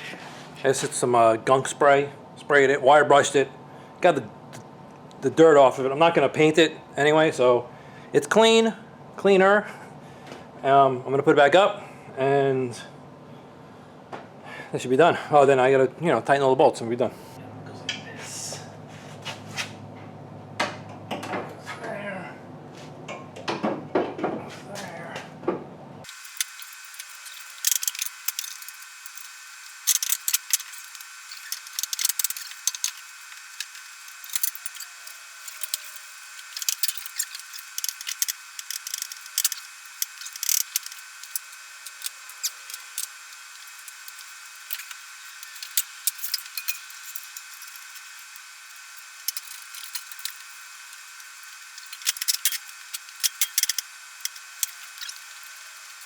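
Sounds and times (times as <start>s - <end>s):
metal tools clinking: 26.1s - 56.0s
socket ratchet clicking: 26.1s - 56.0s.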